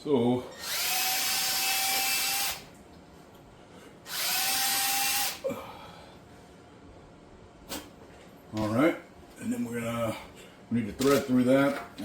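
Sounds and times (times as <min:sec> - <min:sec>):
power drill whining: 0:00.5 - 0:02.7, 0:04.1 - 0:05.4.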